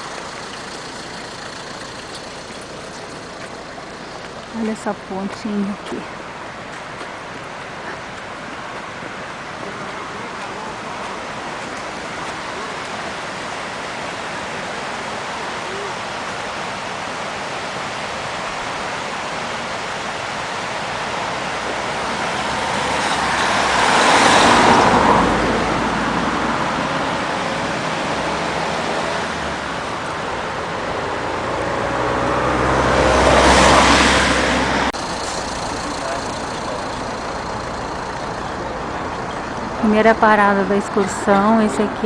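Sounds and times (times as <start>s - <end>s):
traffic and road noise: 0.0s - 42.0s
vehicles passing close by: 0.0s - 42.0s.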